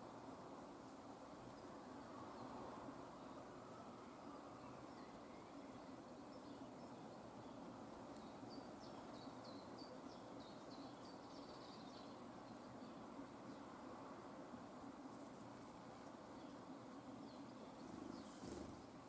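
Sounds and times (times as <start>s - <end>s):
steady background hiss: 0.0s - 19.0s.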